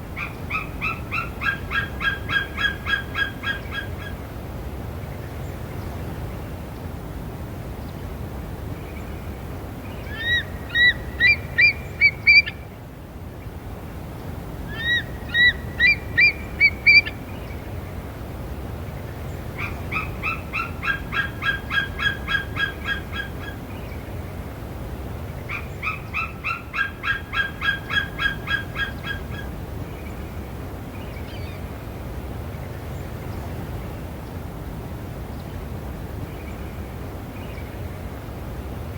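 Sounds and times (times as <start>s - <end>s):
eagle chirping calls: 0.2s - 4.2s, 10.1s - 12.6s, 14.7s - 17.2s, 25.5s - 29.5s.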